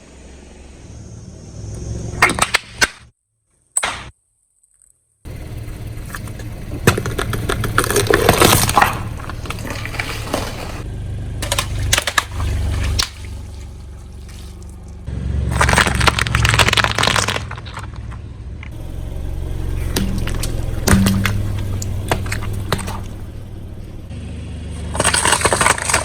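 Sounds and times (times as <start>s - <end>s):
car rumble: 5.3s - 26.0s
tyre crushing objects: 6.8s - 14.8s, 15.5s - 18.2s, 19.8s - 24.0s, 24.8s - 26.0s.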